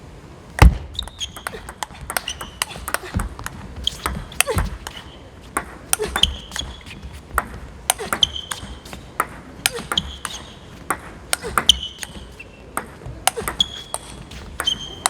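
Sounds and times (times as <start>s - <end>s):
table tennis ball clicking: 1.0s - 5.0s.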